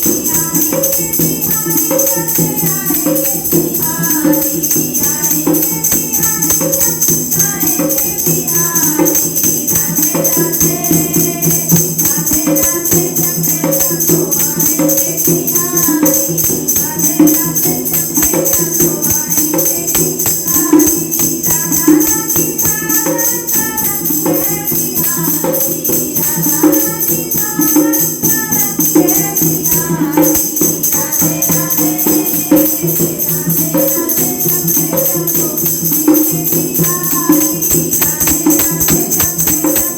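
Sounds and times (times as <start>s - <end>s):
jingling percussion: 0.0s - 39.9s
women singing a hymn: 0.0s - 39.9s.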